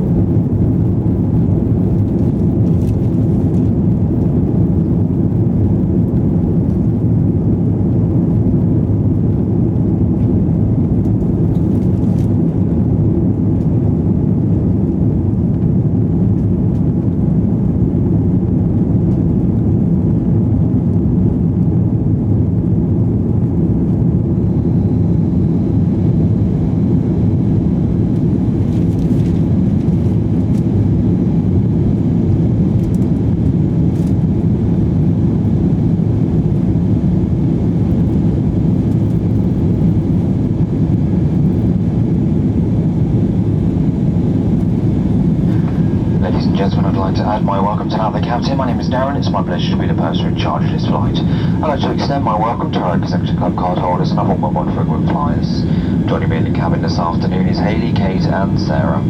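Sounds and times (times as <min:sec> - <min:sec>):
jet engine rumble inside cabin: 0:00.0 - 0:59.0.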